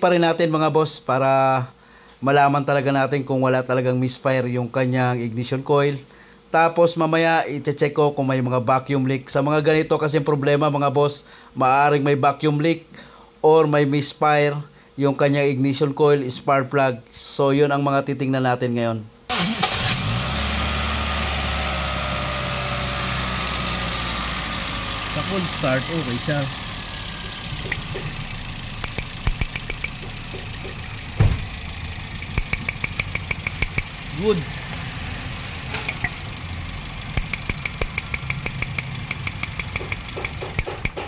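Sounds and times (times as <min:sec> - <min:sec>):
car engine starting and idling: 0:19.3 - 0:41.0
fast regular ticking: 0:26.2 - 0:41.0.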